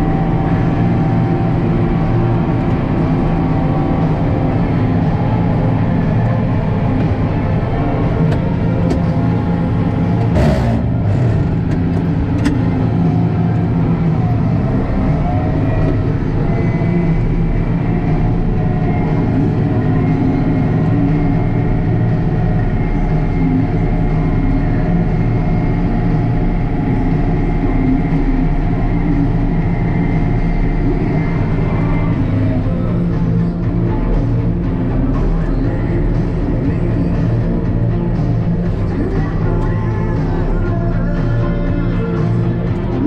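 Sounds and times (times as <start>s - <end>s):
tractor diesel engine running: 0.0s - 43.0s.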